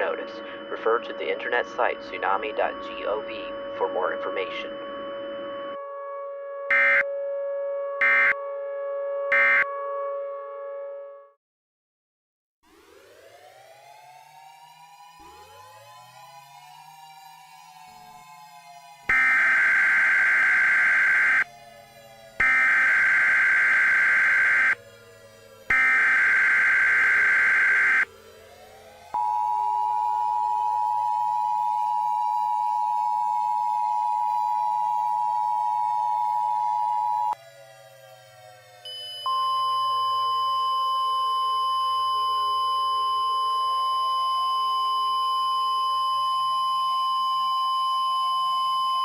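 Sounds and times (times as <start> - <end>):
buzzing data burst: 6.7 - 7.0, 9.3 - 9.6, 19.1 - 21.4, 22.4 - 24.8, 25.7 - 28.0
falling synthesized drone: 17.6 - 29.2
steady alert tone: 22.4 - 24.8, 25.7 - 28.0.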